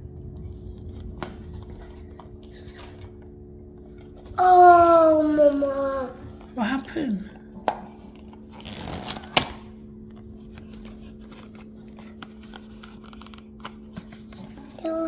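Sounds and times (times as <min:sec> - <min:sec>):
packaging rustling: 0:08.1 - 0:14.6.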